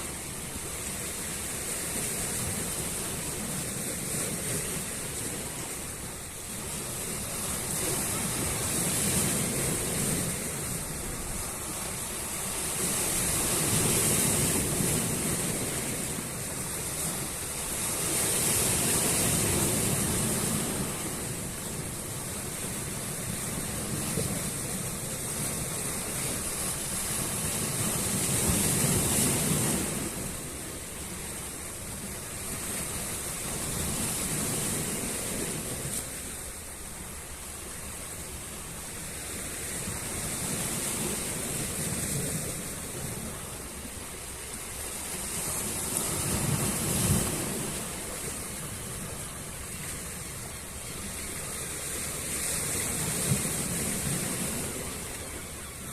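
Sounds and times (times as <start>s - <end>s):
sea waves breaking on a shore: 0.0s - 55.9s.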